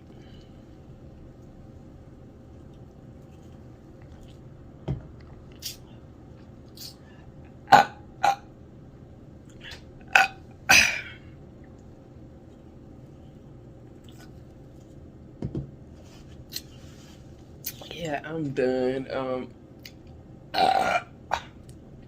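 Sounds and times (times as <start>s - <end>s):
person burping: 7.6s - 8.5s, 9.7s - 11.2s, 20.5s - 21.6s.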